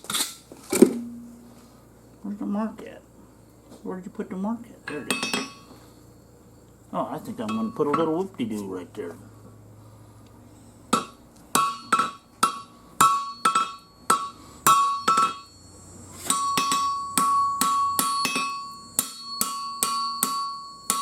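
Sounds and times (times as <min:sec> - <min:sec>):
hammer ringing on anvil: 0:04.9 - 0:05.8, 0:07.4 - 0:08.2, 0:10.9 - 0:21.0.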